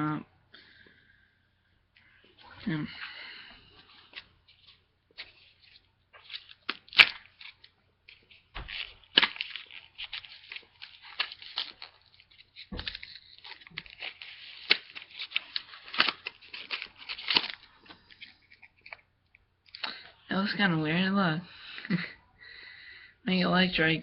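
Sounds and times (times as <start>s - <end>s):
foil pack crinkling: 3.0s - 19.0s
foil pack tearing: 6.2s - 7.7s, 8.6s - 19.0s.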